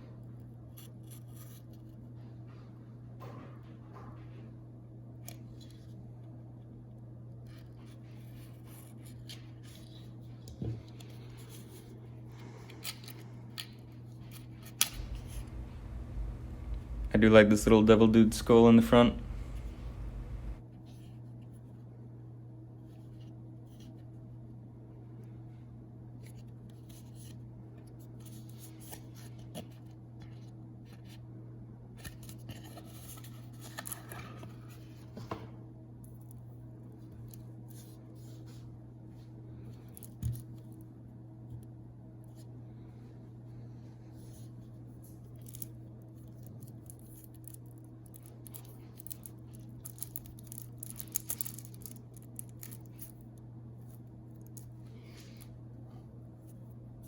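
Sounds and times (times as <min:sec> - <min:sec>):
playing cards clicking and rustling: 0:12.8 - 0:17.0, 0:18.5 - 0:20.6, 0:45.3 - 0:53.2
low hum: 0:14.8 - 0:20.6.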